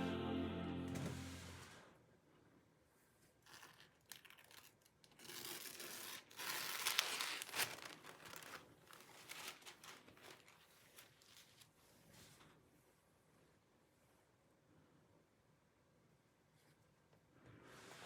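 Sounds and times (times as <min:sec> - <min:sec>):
packaging tearing and crinkling: 0:03.4 - 0:11.6.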